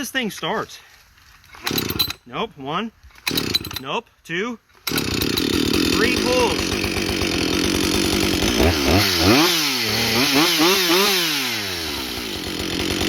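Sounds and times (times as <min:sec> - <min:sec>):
chainsaw idling and revving: 0:01.5 - 0:02.2, 0:03.2 - 0:03.9, 0:04.8 - 0:13.0.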